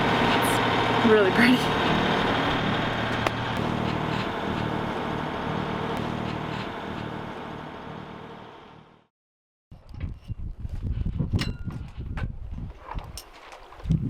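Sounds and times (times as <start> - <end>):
boat engine running: 0.0 - 9.1.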